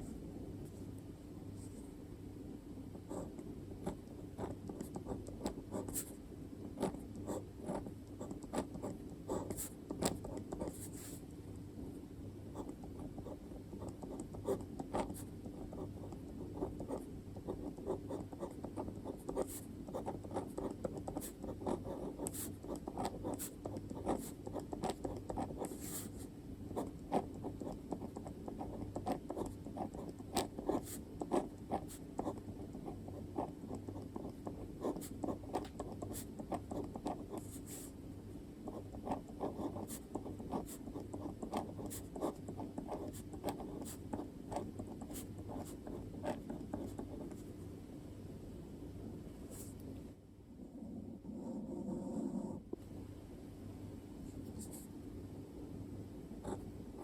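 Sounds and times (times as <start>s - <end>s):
pen scratching on paper: 3.1s - 11.2s, 12.6s - 38.0s, 38.6s - 47.4s.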